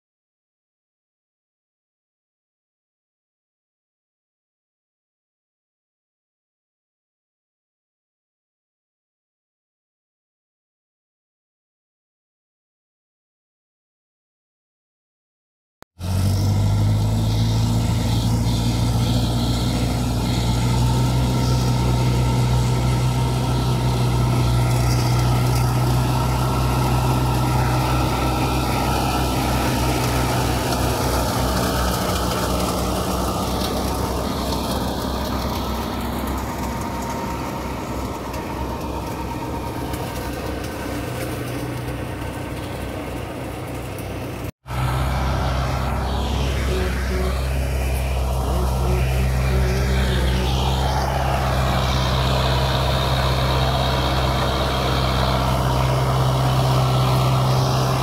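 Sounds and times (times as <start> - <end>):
tractor diesel engine running: 16.0 - 58.0.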